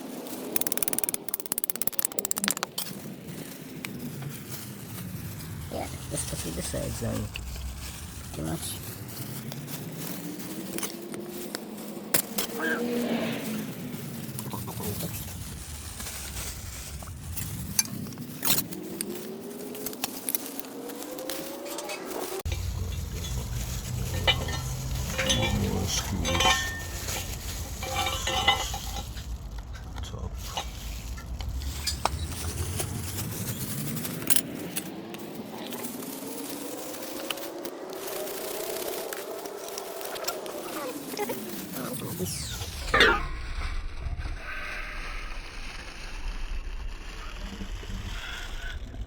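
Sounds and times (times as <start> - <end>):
rustling scraping handling noise: 0.0 - 43.1
plastic housing clicking and clinking: 0.5 - 2.8
low rumble: 3.4 - 10.7, 22.5 - 34.3.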